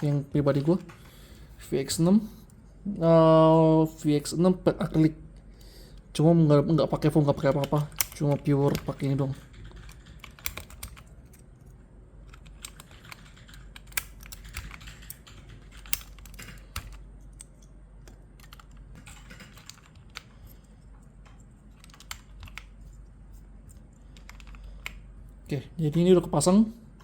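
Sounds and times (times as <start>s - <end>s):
mechanical keyboard clicks and clacks: 7.0s - 11.5s, 12.2s - 20.6s, 21.2s - 22.7s, 24.1s - 25.0s.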